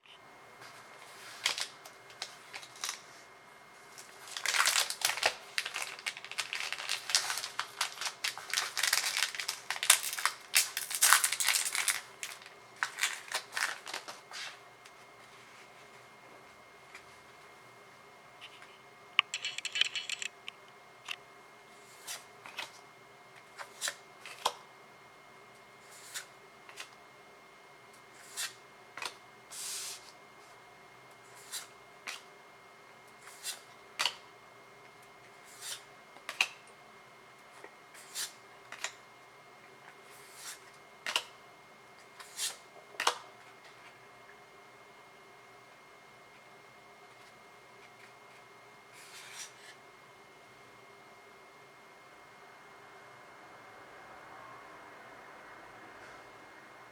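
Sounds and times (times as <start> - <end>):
trading cards handled: 4.0 - 14.6, 18.4 - 20.8.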